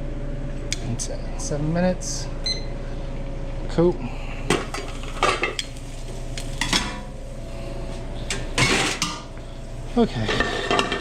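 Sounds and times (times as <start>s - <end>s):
steady low hum: 0.0s - 11.0s
dishes and pots clattering: 6.6s - 7.1s, 8.3s - 9.3s, 10.2s - 11.0s.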